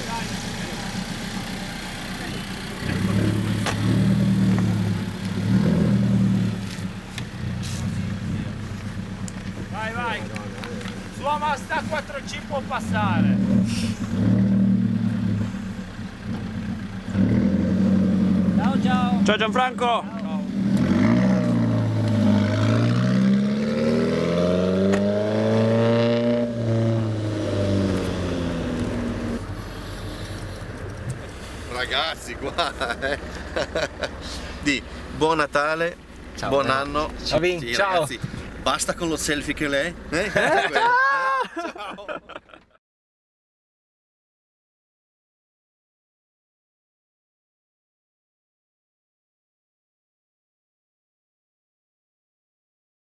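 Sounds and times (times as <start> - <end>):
car engine running: 0.0 - 40.7.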